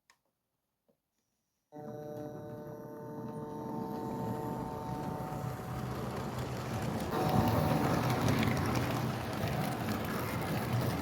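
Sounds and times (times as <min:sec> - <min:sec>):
model train rolling rumble: 0:03.3 - 0:11.0.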